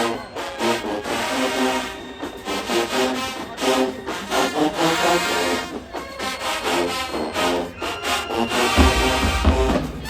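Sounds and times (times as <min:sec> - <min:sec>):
marching band brass playing: 0:00.0 - 0:10.0.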